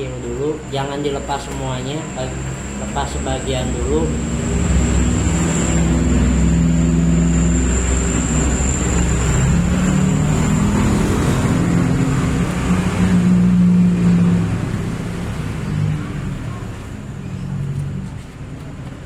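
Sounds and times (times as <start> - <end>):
high-pitched whine: 0.0 - 15.9
vehicle engine running: 0.0 - 19.0.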